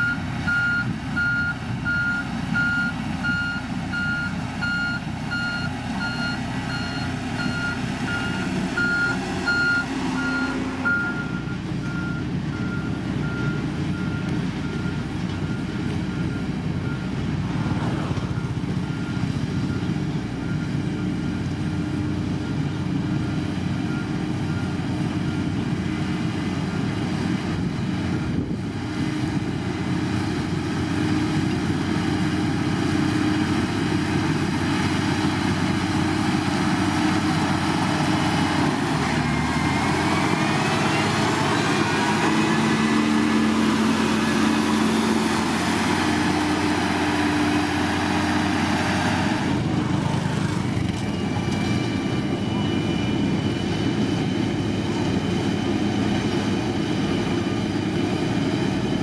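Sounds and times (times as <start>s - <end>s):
reversing alarm beeping: 0.0s - 17.2s, 51.1s - 55.8s
diesel engine rumbling: 0.0s - 59.0s.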